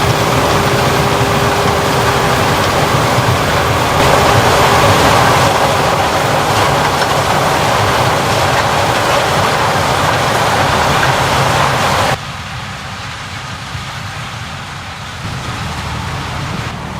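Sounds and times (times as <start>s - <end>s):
harvest machinery drone: 0.0s - 12.2s
machine rattling: 0.0s - 12.2s.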